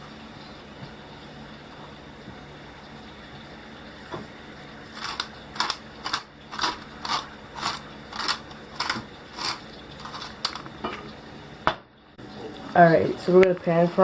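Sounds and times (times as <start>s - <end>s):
pepper grinder grinding rasps: 4.9s - 10.8s.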